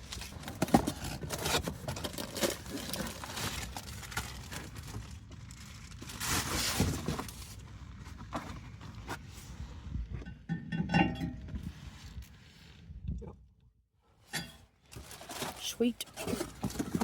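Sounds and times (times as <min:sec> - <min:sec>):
packaging crinkling and tearing: 0:00.0 - 0:07.7, 0:14.9 - 0:17.0.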